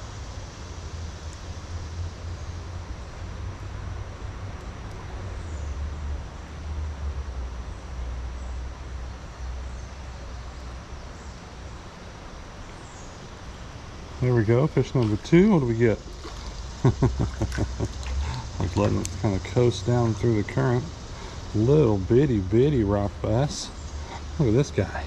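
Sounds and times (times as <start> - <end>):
creek water rushing: 11.6 - 25.0.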